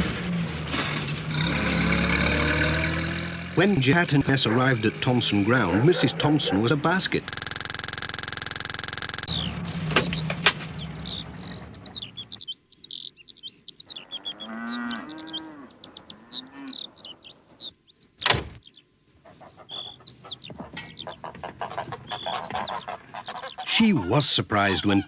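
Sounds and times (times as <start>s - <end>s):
small birds chirping: 1.4s - 25.0s
farm animal lowing: 3.6s - 25.0s
sharp clicks: 7.1s - 10.8s.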